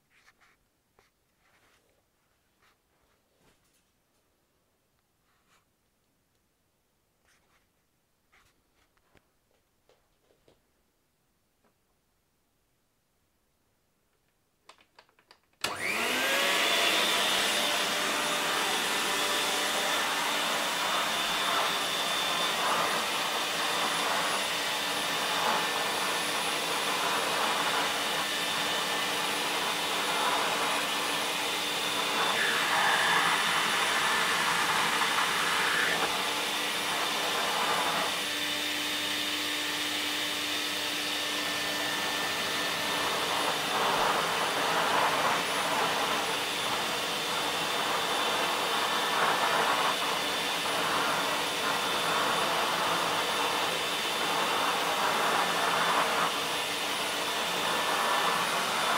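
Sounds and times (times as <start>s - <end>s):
vacuum cleaner motor whining: 15.6s - 58.9s.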